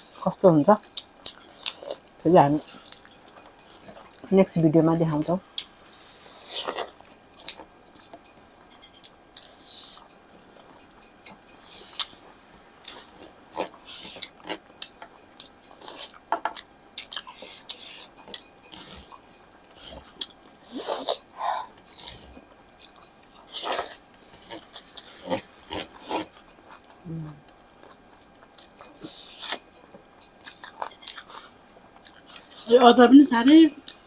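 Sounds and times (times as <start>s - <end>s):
wet chewing and lip smacks: 5.6s - 32.7s.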